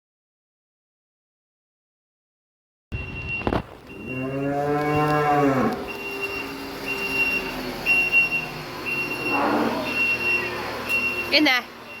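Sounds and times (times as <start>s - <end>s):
cow mooing: 3.9s - 6.6s, 9.2s - 10.0s.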